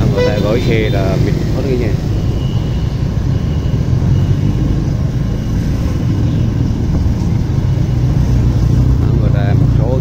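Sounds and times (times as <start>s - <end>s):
city street traffic rumble: 0.0s - 10.0s.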